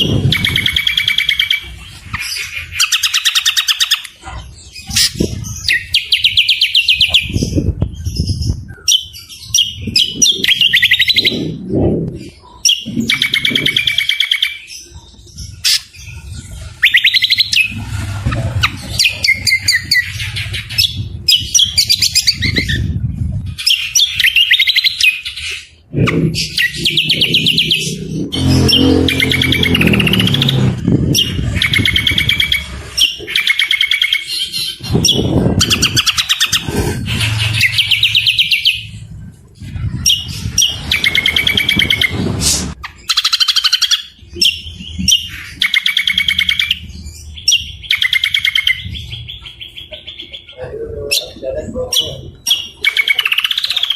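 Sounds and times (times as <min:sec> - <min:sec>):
songbirds chattering and trilling: 0:00.0 - 0:53.9
low rumble: 0:09.8 - 0:13.7, 0:17.4 - 0:23.6, 0:25.8 - 0:33.3, 0:34.7 - 0:42.8.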